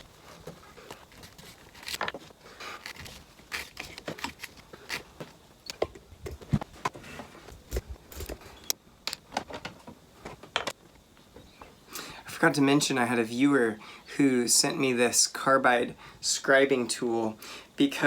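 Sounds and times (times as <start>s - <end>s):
scraping and rustling: 0.0s - 8.6s.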